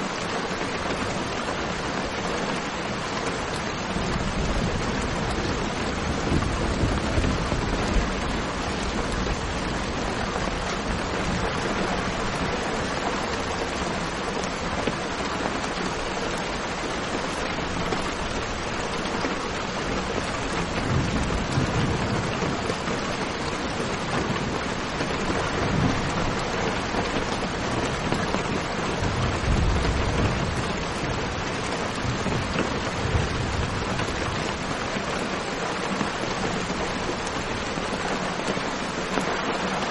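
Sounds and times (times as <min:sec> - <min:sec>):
steady rain: 0:00.0 - 0:39.9
thunder rumbling: 0:04.0 - 0:11.6, 0:20.0 - 0:34.8.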